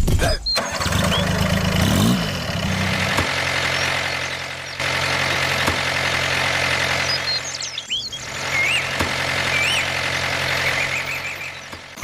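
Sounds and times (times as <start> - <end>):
tractor engine idling: 0.6 - 12.0.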